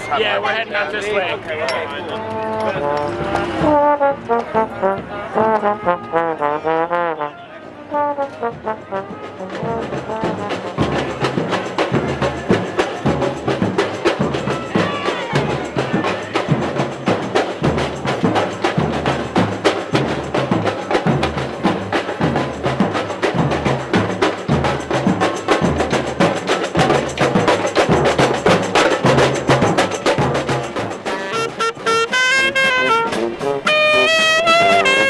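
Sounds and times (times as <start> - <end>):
street band playing: 0.0 - 35.0
fast percussion beat: 8.4 - 35.0.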